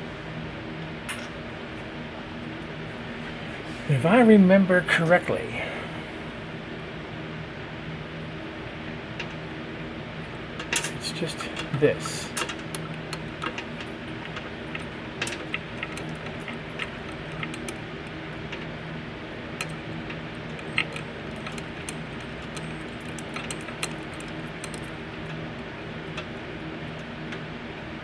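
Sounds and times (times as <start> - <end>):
steady low hum: 0.0 - 28.0
small metal clicks and clinks: 10.3 - 18.7, 19.6 - 25.4.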